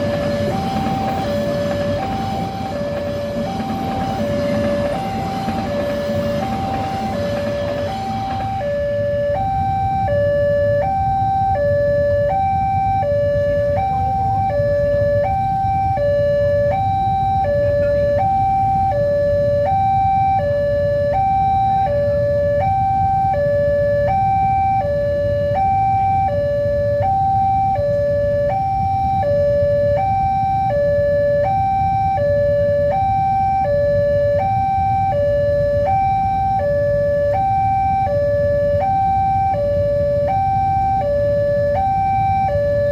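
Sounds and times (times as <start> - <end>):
low rumble: 0.0 - 14.0
level crossing two-tone alarm: 0.0 - 27.6.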